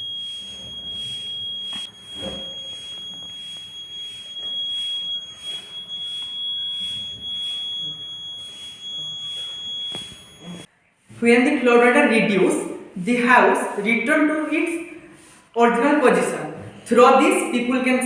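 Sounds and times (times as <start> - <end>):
high-pitched electronic buzzer: 0.0 - 10.7.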